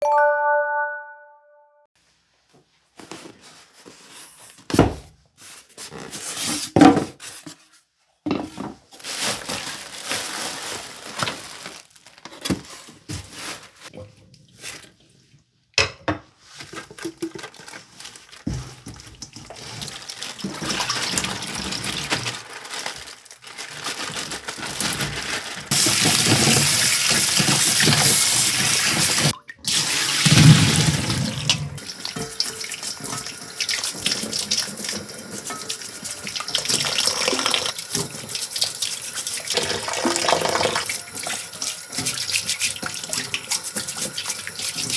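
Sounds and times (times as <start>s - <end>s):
brief chime: 0.0s - 1.8s
tap water splashing into sink: 25.8s - 38.9s, 39.5s - 41.4s.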